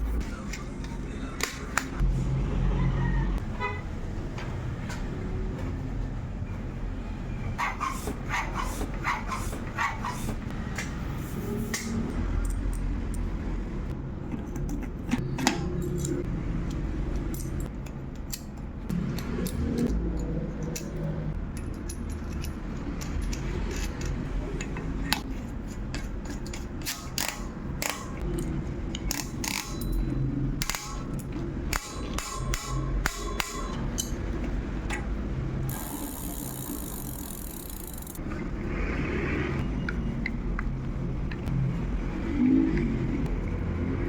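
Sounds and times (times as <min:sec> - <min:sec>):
metallic clicks and rattles: 0:14.2 - 0:38.2.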